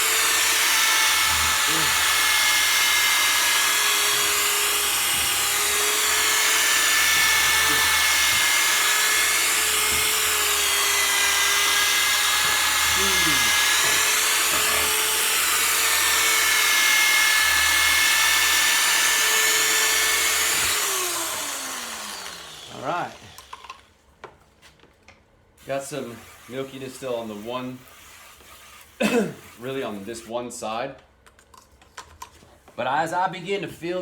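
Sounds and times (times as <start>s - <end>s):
power sander spinning: 0.0s - 23.8s
sanding pad hissing on lens: 0.9s - 15.4s, 25.6s - 30.4s.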